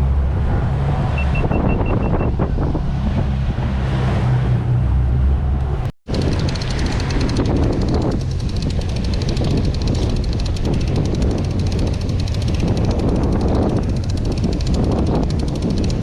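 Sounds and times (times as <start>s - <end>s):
wind buffeting microphone: 0.0s - 4.7s, 6.1s - 16.0s
boat engine running: 6.1s - 16.0s.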